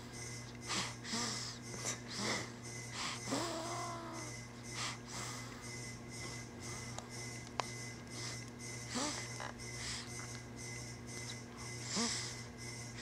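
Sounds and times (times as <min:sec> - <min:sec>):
steady low hum: 0:00.0 - 0:13.0
person snoring: 0:00.8 - 0:04.4, 0:11.8 - 0:12.4
squeaky whimpers: 0:03.1 - 0:04.5.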